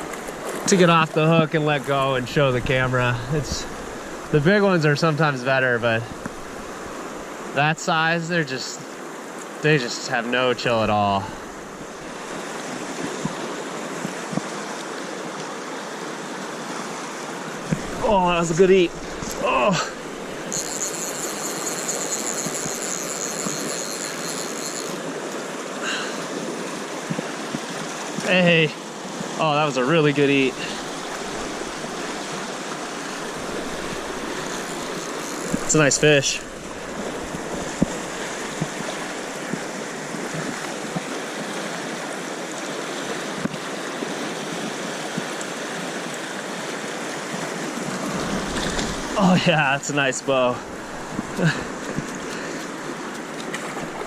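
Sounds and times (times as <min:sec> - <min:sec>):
river water rushing: 0:00.0 - 0:54.0
high steady buzz: 0:17.6 - 0:25.2, 0:30.2 - 0:39.5.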